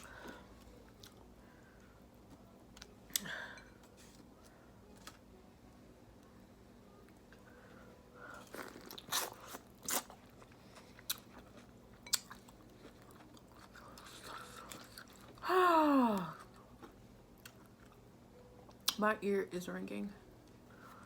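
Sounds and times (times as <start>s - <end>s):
crunching and chewing: 0.0s - 1.3s, 8.2s - 15.4s, 16.2s - 18.0s.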